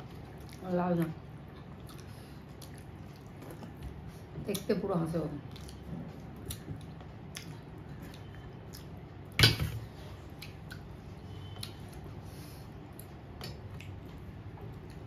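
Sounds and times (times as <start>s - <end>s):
person chewing: 0.0s - 4.2s, 5.5s - 9.4s, 12.8s - 15.0s.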